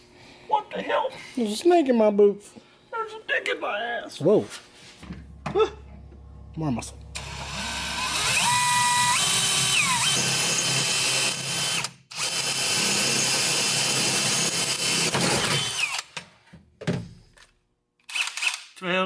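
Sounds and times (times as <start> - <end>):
power tool whining: 5.0 - 16.1.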